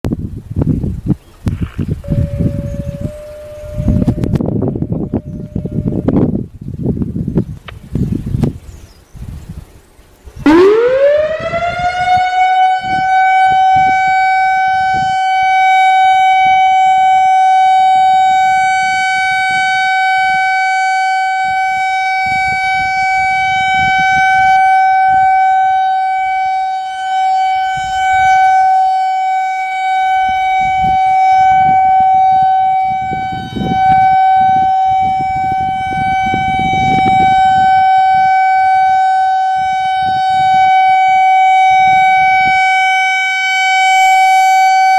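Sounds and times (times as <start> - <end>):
warning siren wailing: 2.0 - 6.5, 10.4 - 44.9.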